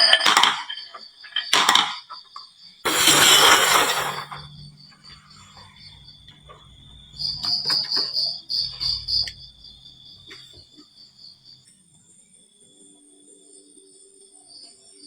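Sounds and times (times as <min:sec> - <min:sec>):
marbles clicking down wooden track: 0:00.0 - 0:04.5.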